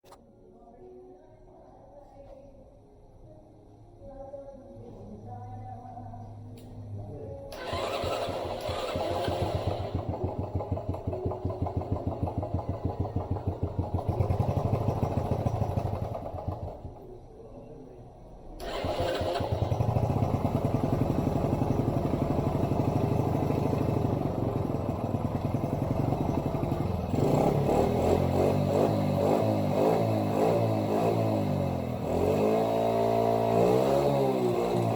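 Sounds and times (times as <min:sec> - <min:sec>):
small engine running: 0:07.6 - 0:17.0, 0:18.6 - 0:34.9.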